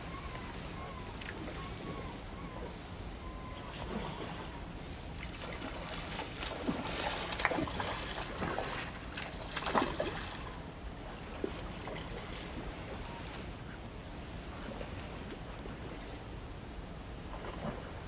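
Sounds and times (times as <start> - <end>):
water splashing: 5.2 - 10.6.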